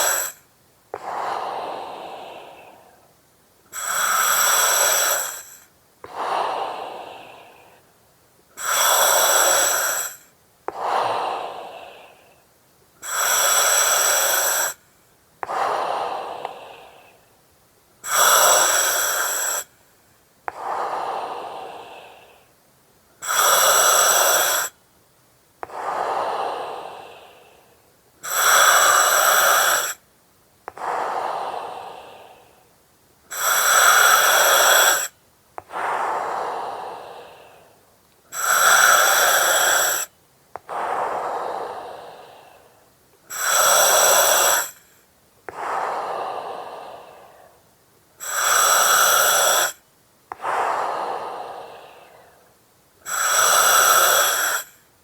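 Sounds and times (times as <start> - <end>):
oxygen mask hiss: 0.0 - 2.9, 3.7 - 7.7, 8.6 - 12.2, 13.0 - 14.8, 18.0 - 19.7, 23.2 - 24.8, 28.2 - 30.0, 33.3 - 37.7, 38.3 - 42.6, 43.3 - 47.3, 48.2 - 52.1, 53.0 - 54.8
soft breathing: 0.0 - 24.8, 25.6 - 30.1, 30.7 - 55.0.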